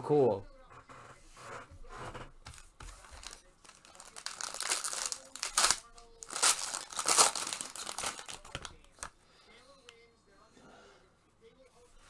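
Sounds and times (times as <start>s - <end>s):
plastic packaging crinkling and tearing: 2.5s - 9.1s.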